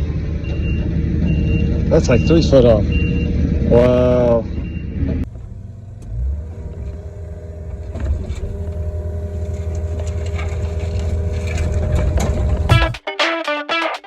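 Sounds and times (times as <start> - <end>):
excavator diesel engine rumble: 0.0 - 13.0
steady whine: 5.2 - 13.0.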